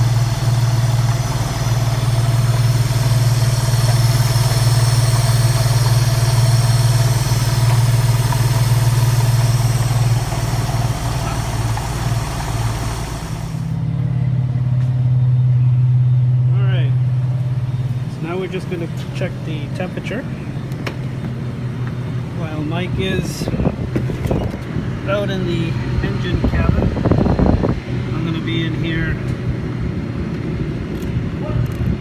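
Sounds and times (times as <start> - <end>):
air conditioning hiss: 0.0 - 13.8
car engine idling: 0.0 - 31.4.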